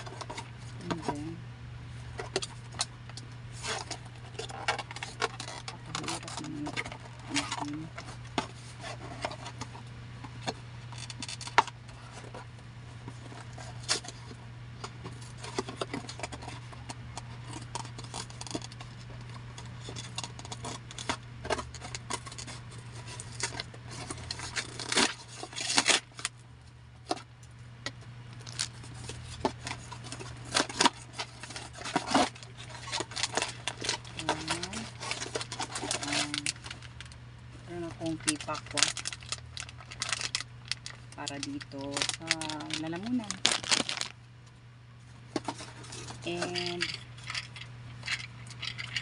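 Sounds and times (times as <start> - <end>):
packaging rustling: 3.5 - 9.7, 15.1 - 26.3, 28.4 - 44.2, 45.3 - 49.0
package being opened: 17.5 - 26.3, 28.3 - 37.2, 38.2 - 44.2.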